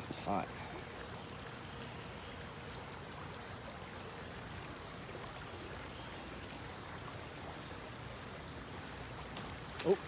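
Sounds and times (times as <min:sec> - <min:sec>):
creek water running: 0:00.0 - 0:10.0.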